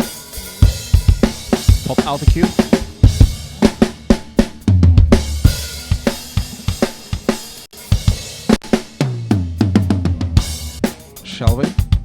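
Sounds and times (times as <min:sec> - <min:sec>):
rock drum kit: 0:00.0 - 0:12.0
low kick drum booms: 0:00.6 - 0:06.7.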